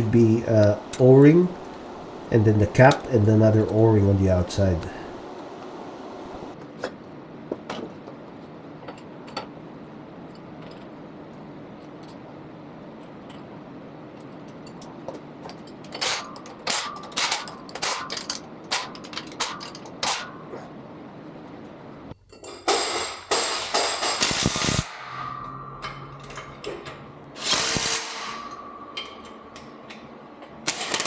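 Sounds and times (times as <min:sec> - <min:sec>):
metallic clinks of steel parts: 0:22.3 - 0:30.1.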